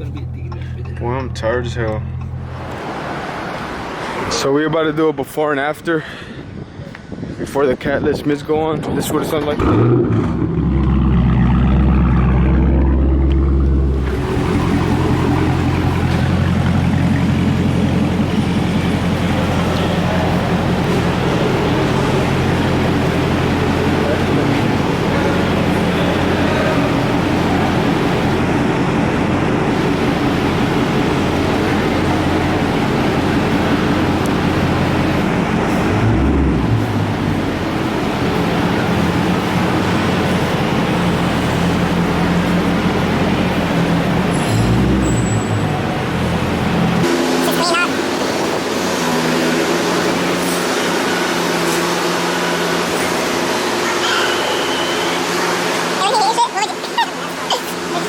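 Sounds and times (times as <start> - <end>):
car engine idling: 0.0 - 3.9, 9.0 - 58.0.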